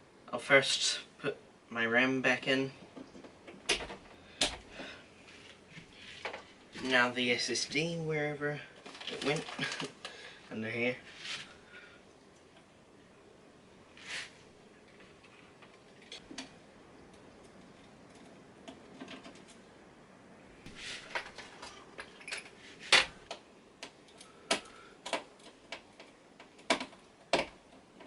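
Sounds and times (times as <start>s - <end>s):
plastic and metal parts clicking: 21.1s - 28.0s.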